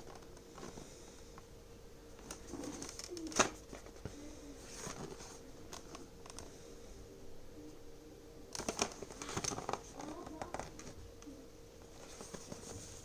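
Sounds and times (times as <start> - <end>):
faint steady hum: 0.0 - 13.0
packaging clicks and rustles: 2.1 - 6.5, 8.5 - 13.0.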